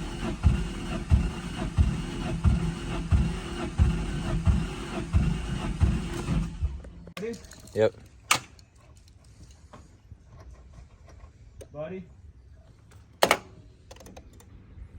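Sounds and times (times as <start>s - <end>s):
engine cranking on starter: 0.0s - 8.6s.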